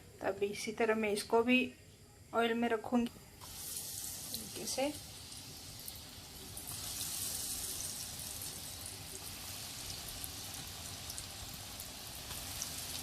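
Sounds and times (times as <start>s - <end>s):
food sizzling in hot oil: 3.4s - 13.0s.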